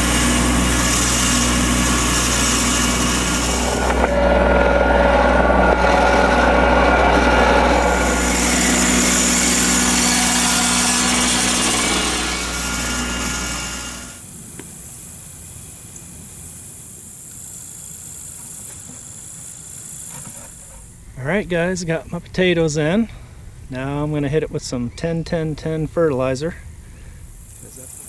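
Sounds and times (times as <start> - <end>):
small engine running: 0.0 - 21.0, 27.2 - 28.0.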